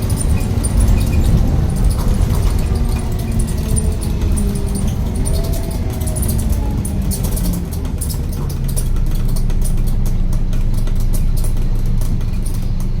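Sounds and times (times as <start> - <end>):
bus diesel engine idling: 0.0 - 13.0
loose fittings rattling: 0.0 - 13.0.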